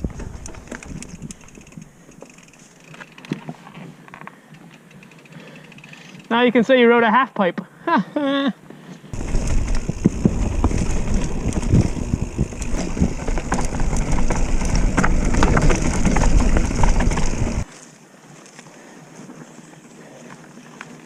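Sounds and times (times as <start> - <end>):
wind rumble on microphone: 0.0 - 1.4, 9.2 - 17.7
bike clattering over ground: 9.2 - 17.7.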